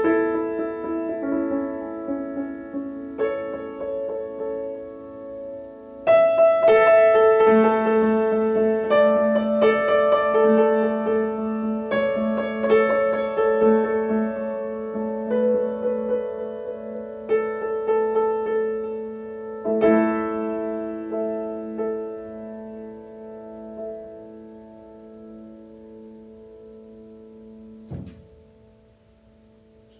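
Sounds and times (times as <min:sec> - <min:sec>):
slow piano chords: 0:00.0 - 0:29.9.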